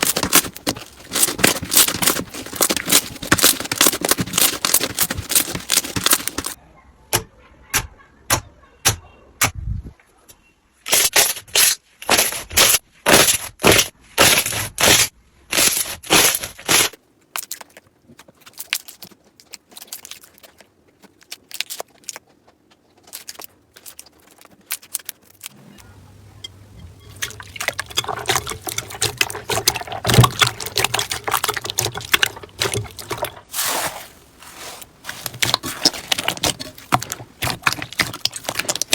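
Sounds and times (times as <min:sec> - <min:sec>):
slime crackling and popping: 0:00.0 - 0:06.6, 0:27.9 - 0:38.9.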